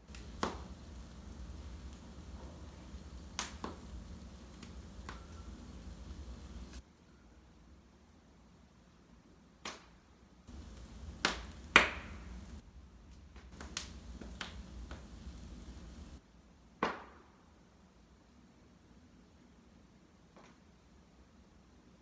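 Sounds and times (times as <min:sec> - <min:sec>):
low rumble of flames: 0:00.0 - 0:06.8, 0:10.5 - 0:16.2
wood fire crackling and popping: 0:00.0 - 0:06.8, 0:10.5 - 0:16.2.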